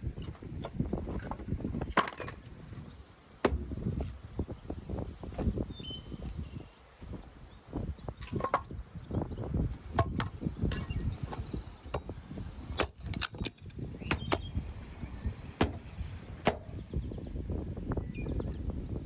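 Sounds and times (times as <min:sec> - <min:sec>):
wood cracking and snapping: 0:12.8 - 0:14.4.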